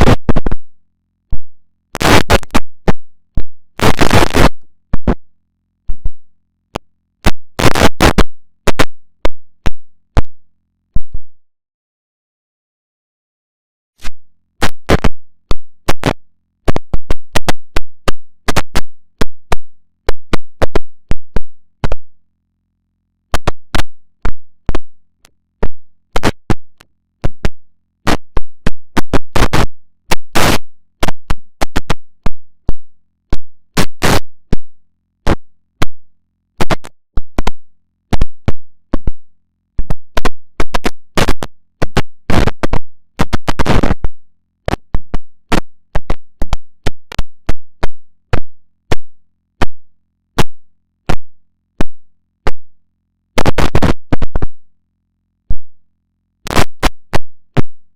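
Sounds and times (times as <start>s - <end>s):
distorted clipped audio bursts: 0.0s - 0.7s, 2.0s - 5.3s, 5.9s - 10.4s, 14.0s - 22.0s, 25.6s - 34.6s, 39.9s - 49.8s, 53.4s - 54.6s, 56.5s - 57.8s.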